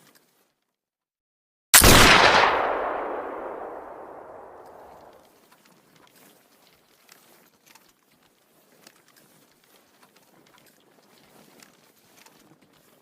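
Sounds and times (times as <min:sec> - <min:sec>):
musket shot with echo: 0:01.8 - 0:05.2.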